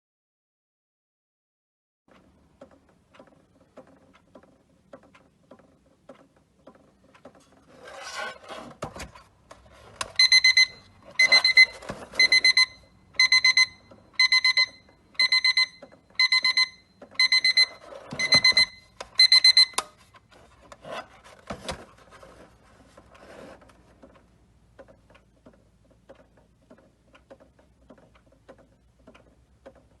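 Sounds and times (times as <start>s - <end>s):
clock ticking: 2.1s - 7.8s, 9.5s - 20.0s, 22.2s - 30.0s
knocks and rubbing from handling: 6.6s - 10.3s, 20.0s - 24.2s
alarm clock ringing: 10.2s - 19.9s.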